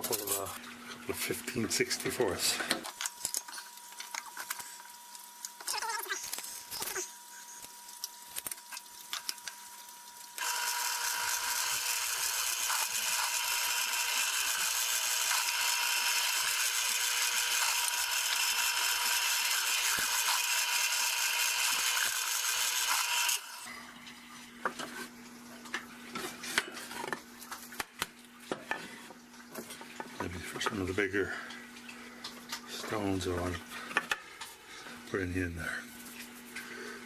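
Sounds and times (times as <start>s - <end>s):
drill press drilling wood: 10.4s - 23.6s.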